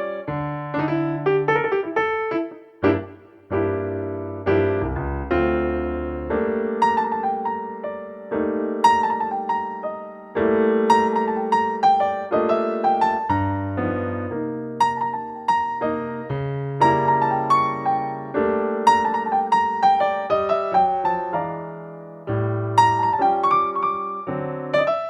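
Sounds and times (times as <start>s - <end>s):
slow piano chords: 0.0s - 25.0s.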